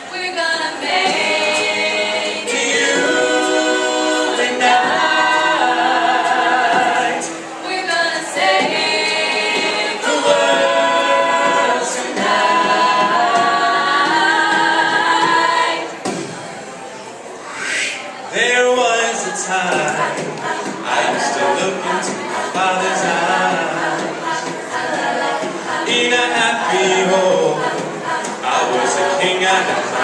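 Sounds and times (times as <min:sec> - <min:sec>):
vocal group singing in harmony: 0:00.0 - 0:16.6, 0:17.6 - 0:30.0.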